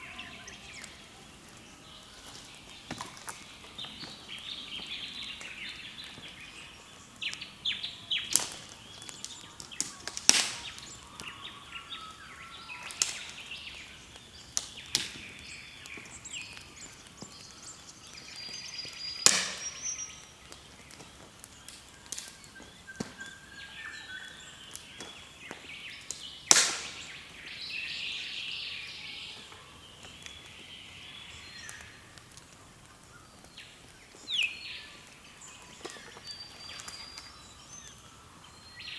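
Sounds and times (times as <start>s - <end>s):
wild birds chirping and chattering: 0.0s - 38.9s
sharp cracks: 8.1s - 11.5s, 12.8s - 18.3s, 19.0s - 23.2s, 24.7s - 27.5s.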